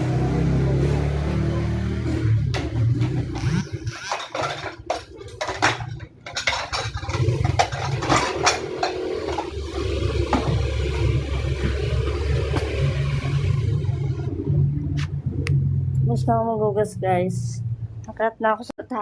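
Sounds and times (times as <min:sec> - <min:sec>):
steady low hum: 0:02.0 - 0:18.7
dishes and cutlery clattering: 0:02.6 - 0:09.6.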